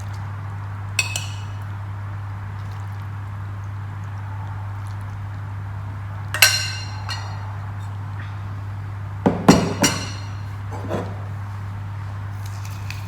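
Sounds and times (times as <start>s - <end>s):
ladle clinking against dish: 1.0s - 1.6s, 6.4s - 7.5s, 9.3s - 11.3s.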